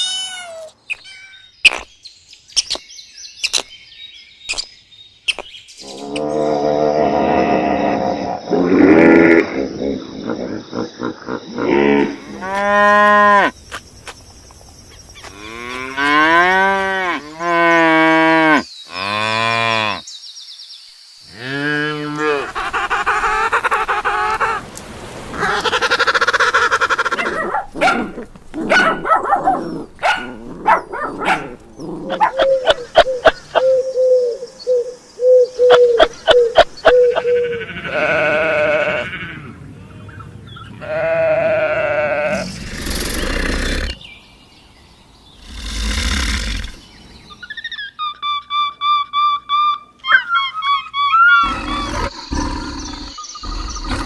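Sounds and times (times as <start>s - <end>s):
noisy animal calls: 30.6s - 44.0s, 47.5s - 54.0s.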